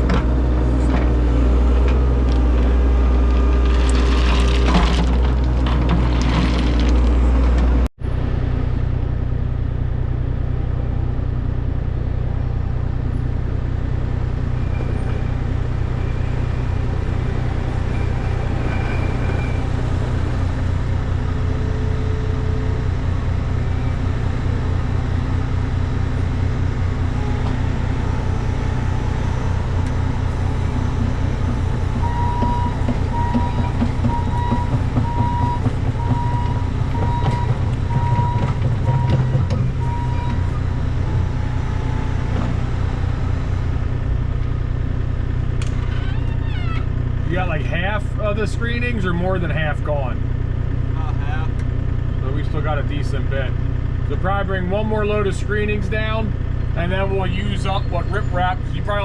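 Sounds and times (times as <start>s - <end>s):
scraping and clatter: 0.0s - 7.7s
heavy diesel engine running: 0.0s - 59.0s.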